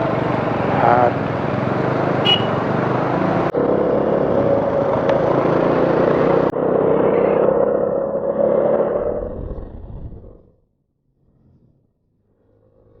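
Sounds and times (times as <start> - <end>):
motorcycle engine: 0.0 - 9.2.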